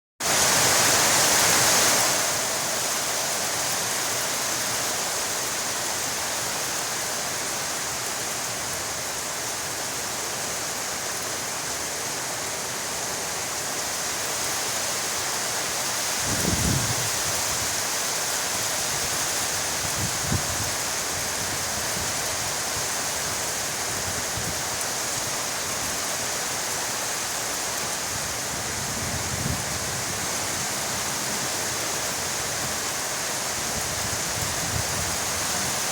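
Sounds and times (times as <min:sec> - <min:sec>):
heavy rain: 0:00.2 - 0:35.9.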